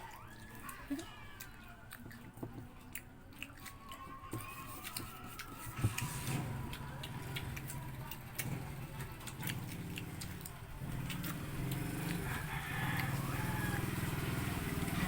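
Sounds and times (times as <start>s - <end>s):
chewing clicks: 0.0s - 13.8s
small engine running: 6.0s - 15.0s.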